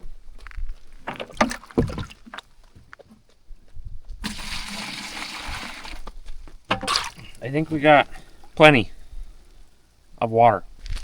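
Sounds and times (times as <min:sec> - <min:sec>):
buckets knocking and bumping: 0:01.0 - 0:02.5, 0:04.2 - 0:09.7
water pouring and splashing: 0:01.0 - 0:02.5, 0:04.2 - 0:09.8.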